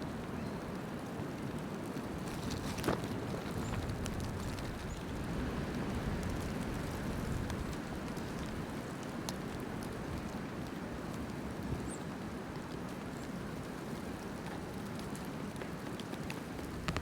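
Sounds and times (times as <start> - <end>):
rushing storm wind: 2.2 - 11.9
faint ticks: 14.1 - 17.0.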